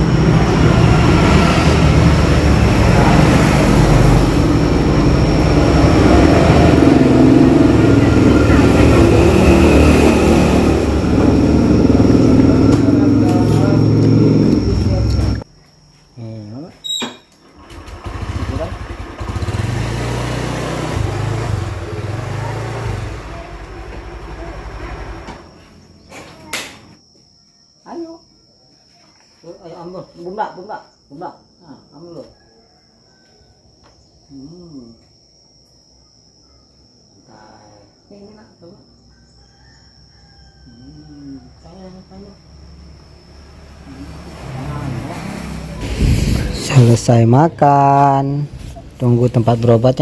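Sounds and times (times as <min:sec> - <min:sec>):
road traffic noise: 0:00.0 - 0:15.5, 0:16.8 - 0:27.0, 0:39.6 - 0:50.0
vehicle engine rumbling: 0:00.0 - 0:15.5, 0:17.6 - 0:27.0, 0:40.8 - 0:50.0.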